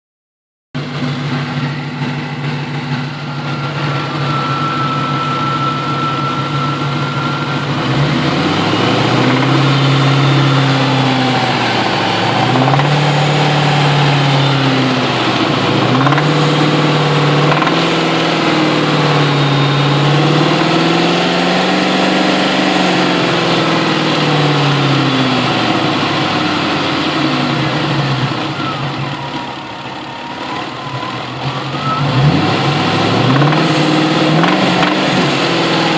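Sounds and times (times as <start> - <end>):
car engine idling and revving: 0.8 - 35.9
engine rattle: 0.8 - 35.9.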